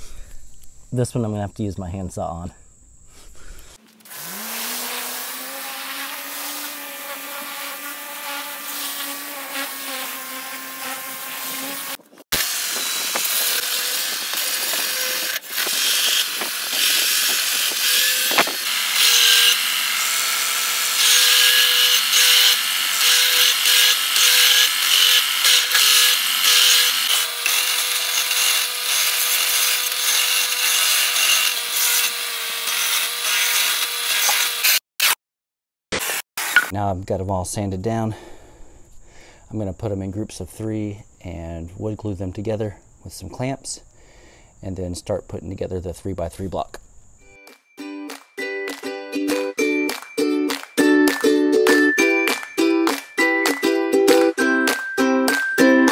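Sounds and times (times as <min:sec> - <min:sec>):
electric sander on wood: 0:04.0 - 0:34.8
power tool motor running: 0:04.0 - 0:34.8.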